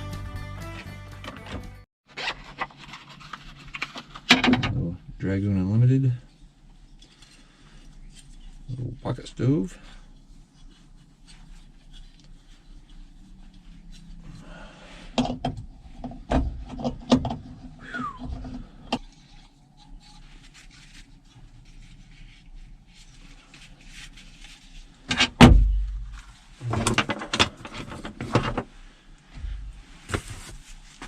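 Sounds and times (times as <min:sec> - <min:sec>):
heavy thump with low boom: 0:25.4 - 0:26.1.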